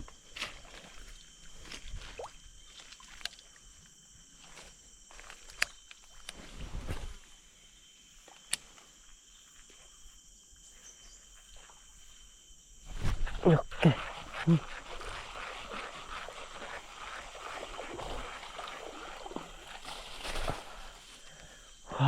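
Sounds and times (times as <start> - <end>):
insects shrilling: 0.0 - 22.0.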